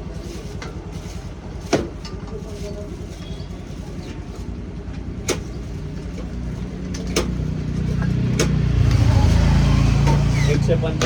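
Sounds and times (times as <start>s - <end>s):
engine humming: 0.0s - 11.0s.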